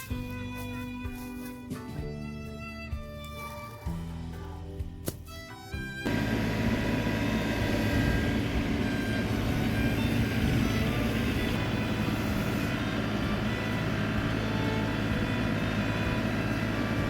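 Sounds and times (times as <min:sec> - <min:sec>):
vehicle engine running: 0:06.0 - 0:17.0.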